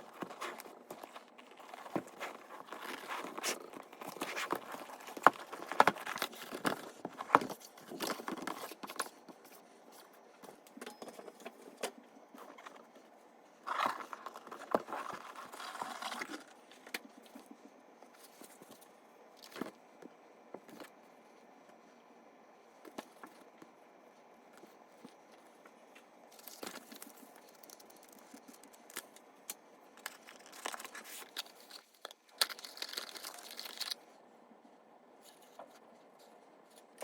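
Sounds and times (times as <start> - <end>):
packaging rustling: 0.0 - 9.6, 30.0 - 34.0.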